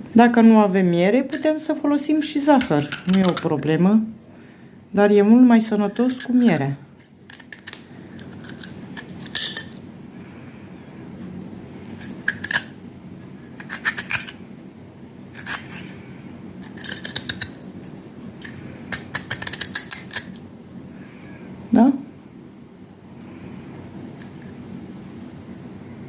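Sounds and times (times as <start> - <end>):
metal utensil scraping radish: 5.8 - 6.7, 7.3 - 9.8, 15.4 - 16.0.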